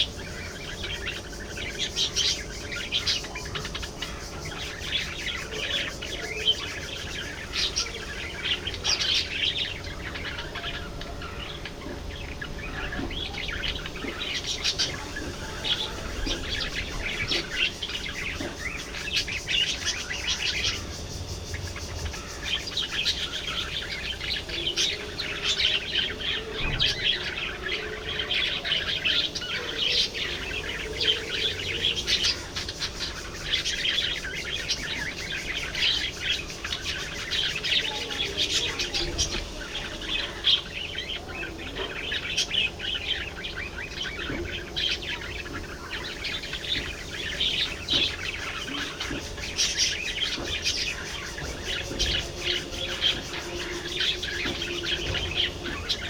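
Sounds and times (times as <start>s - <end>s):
budgerigars chirping and chattering: 0.0s - 56.0s.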